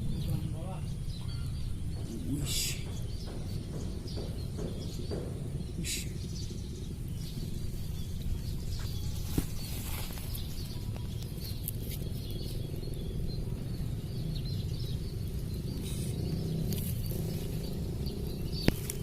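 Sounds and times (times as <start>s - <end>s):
low rumble: 0.0s - 5.8s, 10.4s - 19.0s
faint bird chirps: 0.0s - 19.0s.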